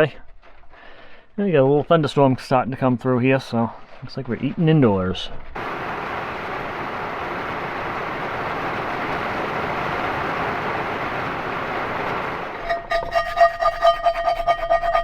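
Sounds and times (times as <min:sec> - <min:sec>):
steady rain hiss: 0:00.0 - 0:12.7.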